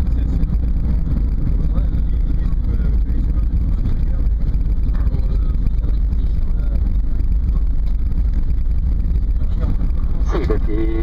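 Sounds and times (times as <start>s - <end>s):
airplane cabin rumble: 0.0s - 11.0s
faint passenger voices: 0.0s - 11.0s.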